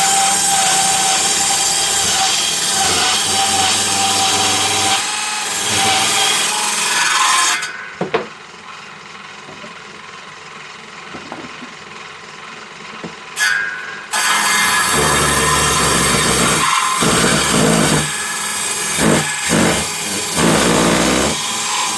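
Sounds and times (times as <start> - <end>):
power saw cutting timber: 0.0 - 7.8, 13.4 - 21.9.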